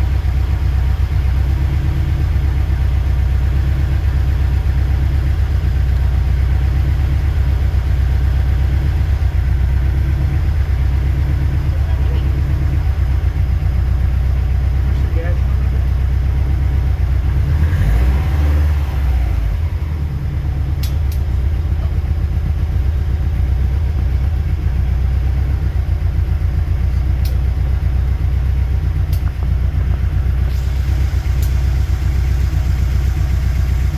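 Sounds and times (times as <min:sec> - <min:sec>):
car engine idling: 0:00.0 - 0:33.9.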